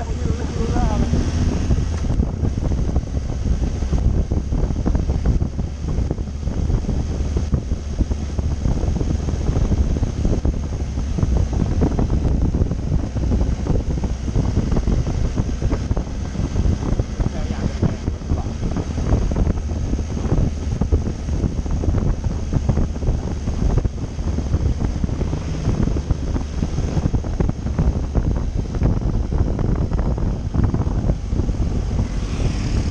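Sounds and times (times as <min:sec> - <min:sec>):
motorcycle low rumble: 0:00.0 - 0:32.9
wind buffeting microphone: 0:00.0 - 0:32.9.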